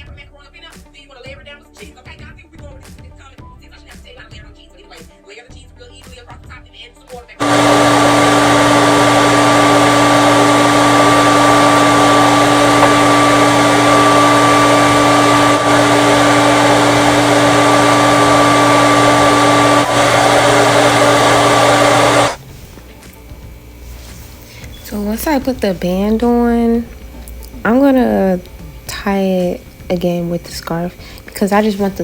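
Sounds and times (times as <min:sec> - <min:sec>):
hair dryer blowing: 0:07.4 - 0:22.5.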